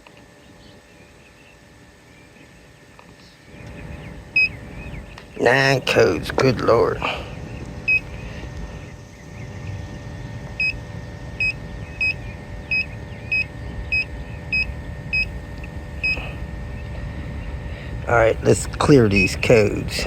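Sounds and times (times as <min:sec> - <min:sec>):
low hum inside car: 0:00.0 - 0:20.0.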